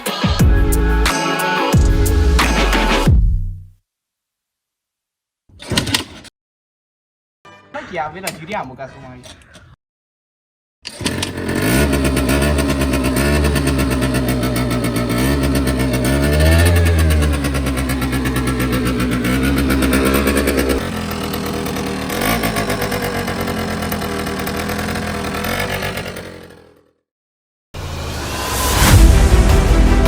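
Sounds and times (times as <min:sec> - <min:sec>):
scooter engine revving: 0:10.9 - 0:27.0.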